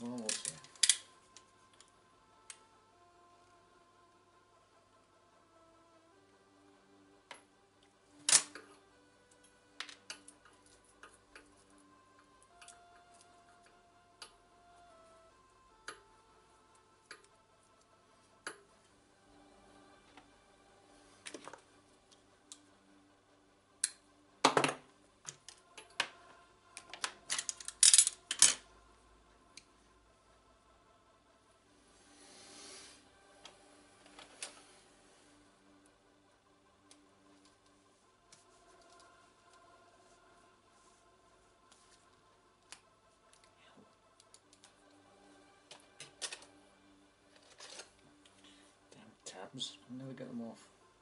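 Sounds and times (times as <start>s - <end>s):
small hard objects clicking: 0.2s - 1.5s, 26.8s - 28.6s.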